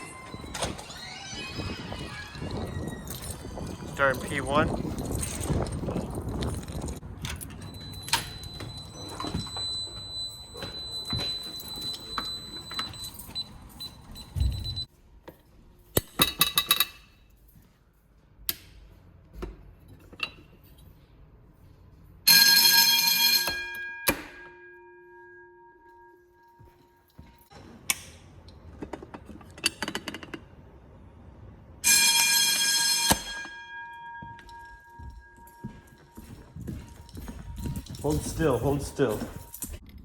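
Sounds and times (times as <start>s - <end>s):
steady high tone: 0.0s - 5.4s
fire alarm bell ringing: 0.0s - 14.9s, 22.2s - 27.5s, 31.8s - 39.8s.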